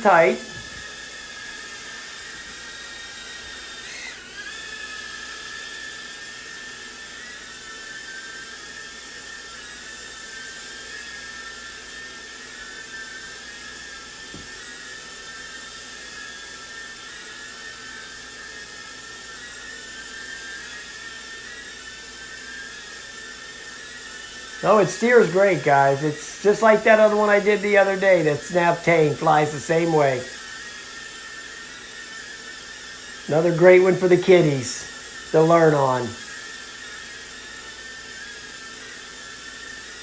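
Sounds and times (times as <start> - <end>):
quadcopter propellers whining: 0.0 - 6.6, 23.7 - 37.1.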